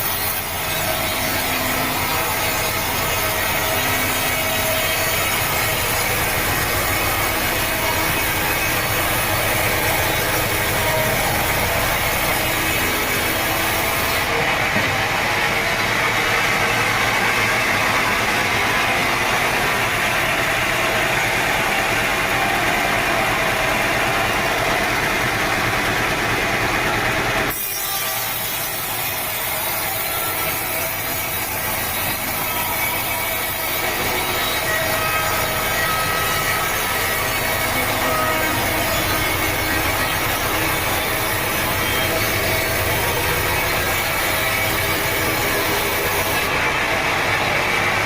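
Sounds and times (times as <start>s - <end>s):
saw rasping through log: 0.0s - 14.3s, 27.5s - 46.5s
machinery running: 0.0s - 48.0s.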